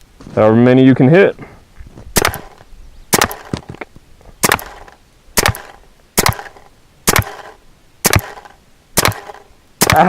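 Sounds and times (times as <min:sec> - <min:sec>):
paintball gun firing: 0:02.2 - 0:03.8, 0:04.4 - 0:10.0.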